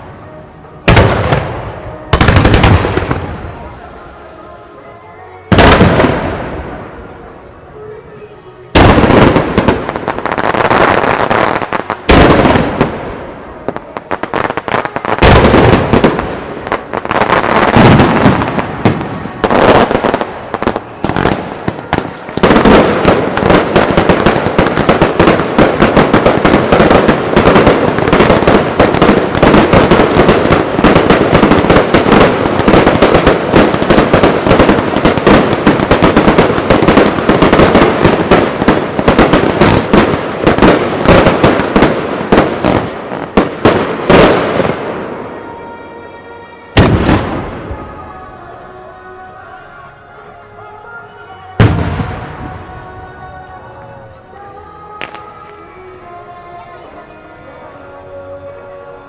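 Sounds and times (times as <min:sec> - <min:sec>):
rapid firework bangs and crackles: 0:00.9 - 0:03.8, 0:05.5 - 0:06.8, 0:08.7 - 0:45.2, 0:46.8 - 0:47.8, 0:51.6 - 0:52.6.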